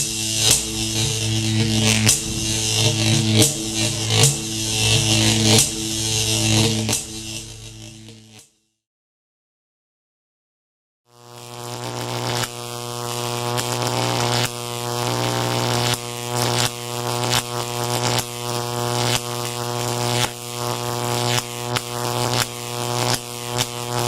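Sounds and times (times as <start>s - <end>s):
crackling electric snaps: 0.0s - 8.1s, 11.5s - 24.0s
loud electrical hum: 0.0s - 8.3s, 11.2s - 24.0s.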